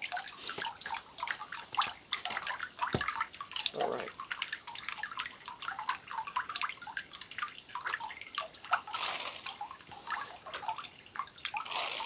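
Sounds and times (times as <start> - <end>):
sap dripping into tank: 0.0 - 8.6.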